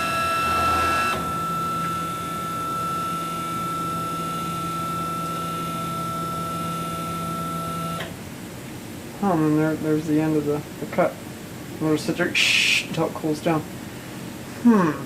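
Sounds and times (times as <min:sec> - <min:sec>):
electric motor whine: 0:00.0 - 0:08.1.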